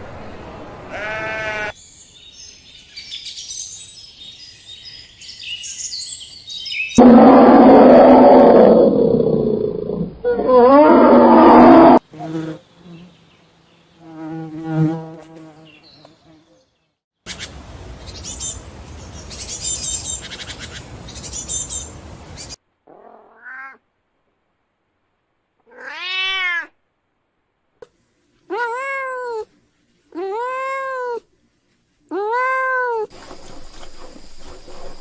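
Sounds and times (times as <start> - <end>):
loud animal call: 7.0 - 12.0
cat meowing: 22.9 - 23.8, 25.6 - 26.8, 28.5 - 29.5, 32.1 - 33.1.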